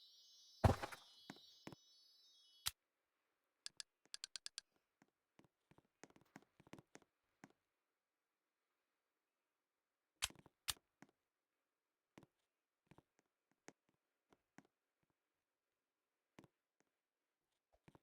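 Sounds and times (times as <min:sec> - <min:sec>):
thump: 0:00.6 - 0:01.0.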